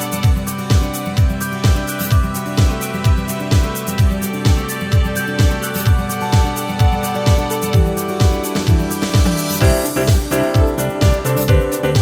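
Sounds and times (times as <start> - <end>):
electronic kick-drum beat: 0.0 - 12.0
held synth notes: 6.9 - 12.0.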